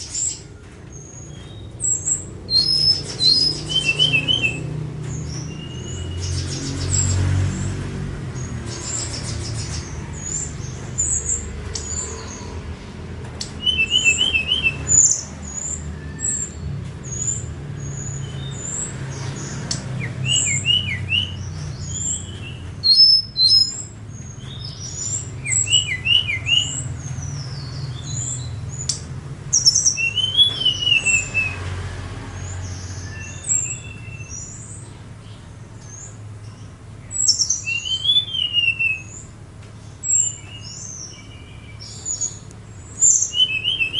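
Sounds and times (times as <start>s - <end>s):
bird chirps and whistles: 1.0s - 6.4s, 13.4s - 18.9s, 20.0s - 31.6s, 37.1s - 39.3s, 43.0s - 43.9s.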